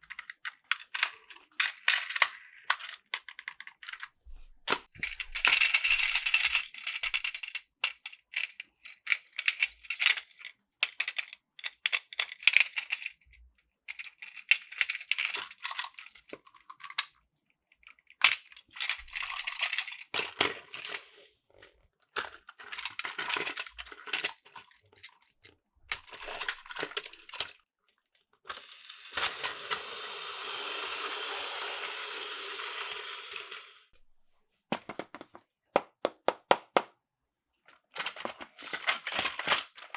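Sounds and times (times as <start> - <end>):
plastic toy trains clicking: 0.0 - 4.1, 4.7 - 17.2, 17.8 - 27.6, 28.5 - 33.9, 37.9 - 39.9
toy train motor whirring: 5.0 - 7.3, 28.5 - 33.9.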